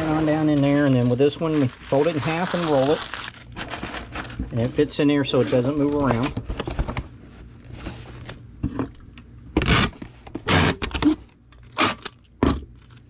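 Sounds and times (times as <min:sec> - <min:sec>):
cardboard box scraping and rustling: 0:00.0 - 0:04.7.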